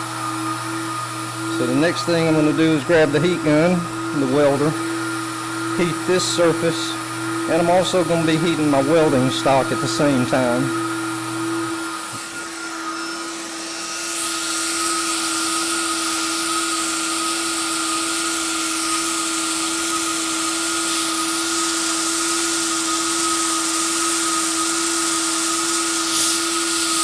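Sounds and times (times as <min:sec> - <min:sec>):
hot-air plastic welder blower hiss: 0:00.0 - 0:27.0.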